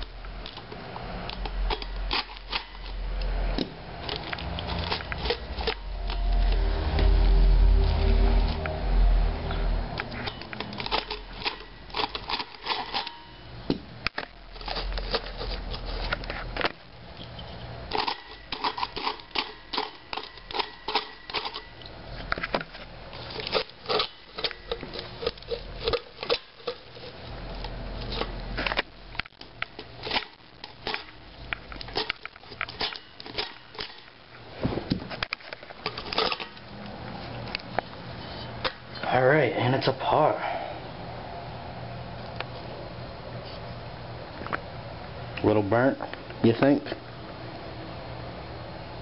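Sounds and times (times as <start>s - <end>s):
glued parts crackling and snapping: 0.0s - 7.3s, 10.0s - 38.0s.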